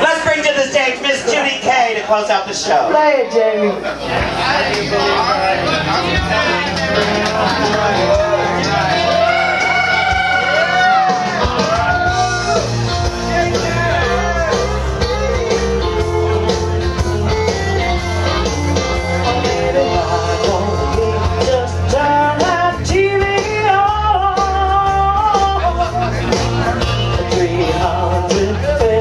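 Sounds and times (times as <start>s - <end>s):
steady bass line: 4.1s - 29.0s
person singing: 18.4s - 29.0s.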